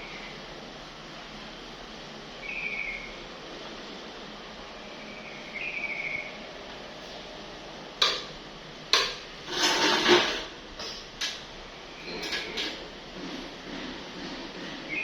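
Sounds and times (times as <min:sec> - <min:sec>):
scraping rattle: 0:09.4 - 0:10.6.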